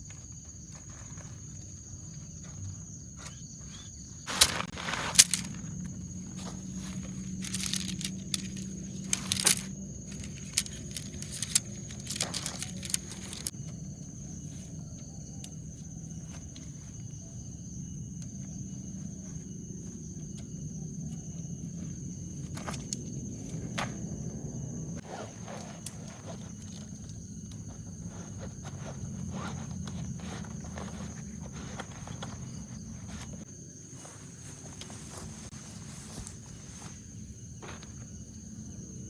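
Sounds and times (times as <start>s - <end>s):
insects droning: 0.0s - 39.0s
rustling and sharp clicks: 4.3s - 13.5s.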